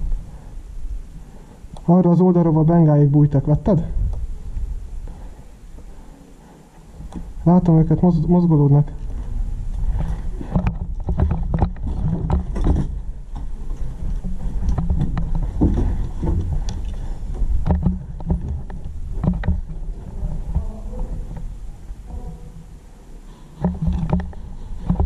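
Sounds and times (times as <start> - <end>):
low rumbling noise: 0.0 - 25.0
sharp clicks and knocks: 9.8 - 19.9, 23.6 - 25.0.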